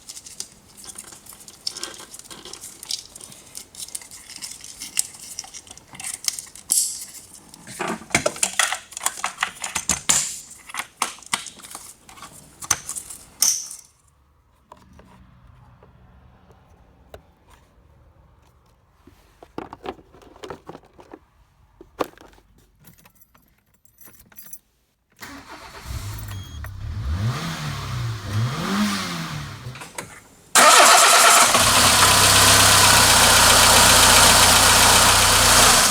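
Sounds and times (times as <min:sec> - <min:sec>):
tools clattering: 0:00.0 - 0:14.0
car engine starting and revving: 0:25.2 - 0:30.0, 0:30.6 - 0:35.9.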